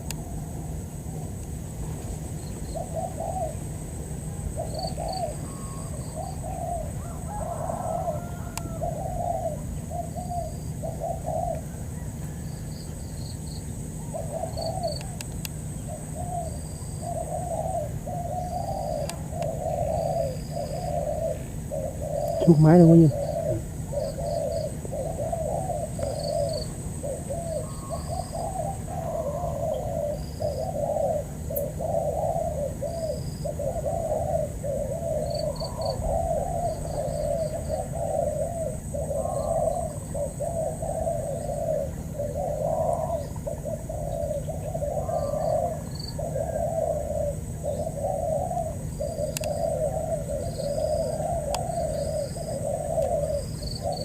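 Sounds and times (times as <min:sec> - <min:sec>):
doves cooing: 0:00.0 - 0:54.0
small birds chirping: 0:12.3 - 0:54.0.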